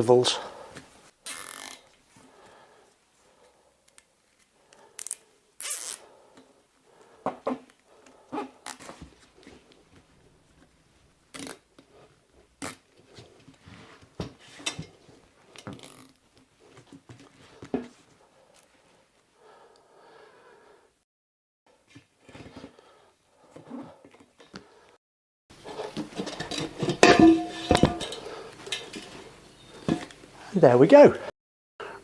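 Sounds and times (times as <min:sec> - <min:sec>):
zip ties ratcheting tight: 0:01.2 - 0:01.8, 0:05.0 - 0:06.0.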